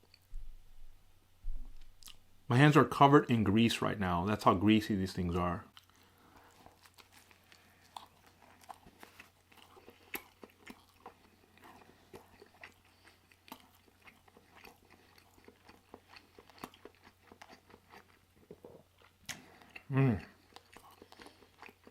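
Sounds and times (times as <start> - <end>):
chewing with mouth clicks: 5.7 - 21.9.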